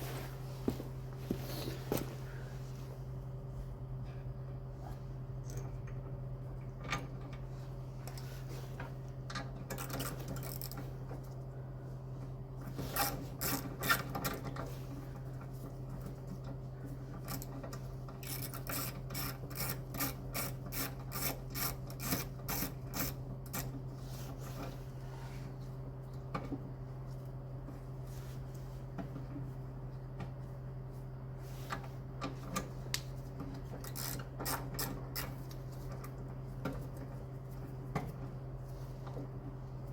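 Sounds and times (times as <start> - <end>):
low hum: 0.0 - 9.2
ratchet clicking: 33.8 - 35.3.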